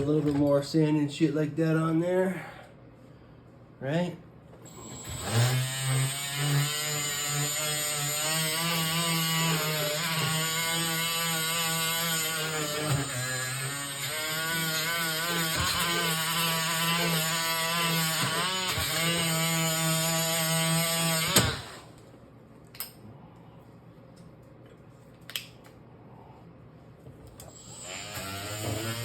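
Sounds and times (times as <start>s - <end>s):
power tool sanding metal: 4.9s - 21.9s, 27.5s - 29.0s.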